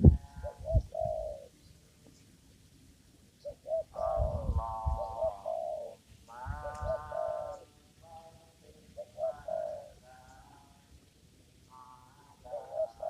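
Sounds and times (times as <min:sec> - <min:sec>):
dove cooing: 0:00.0 - 0:01.6, 0:03.4 - 0:10.8, 0:11.7 - 0:13.0.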